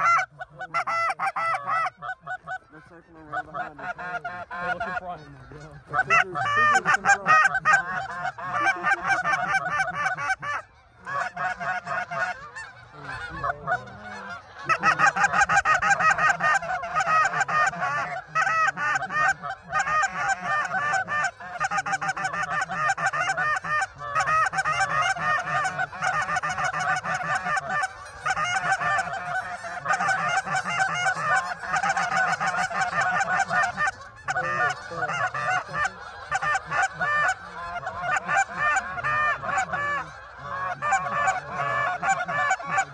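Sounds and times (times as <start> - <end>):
geese honking: 0.0 - 42.9.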